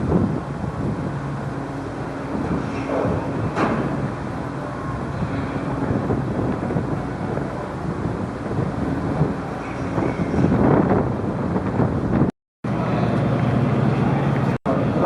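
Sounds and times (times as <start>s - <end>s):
ship engines droning: 0.0s - 15.0s
wind buffeting microphone: 0.0s - 15.0s.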